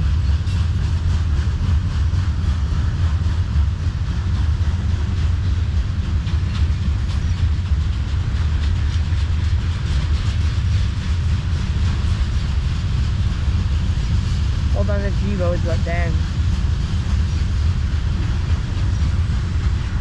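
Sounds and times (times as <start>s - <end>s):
wheels clicking over rail joints: 0.0s - 14.4s
freight train rumbling past: 0.0s - 20.0s.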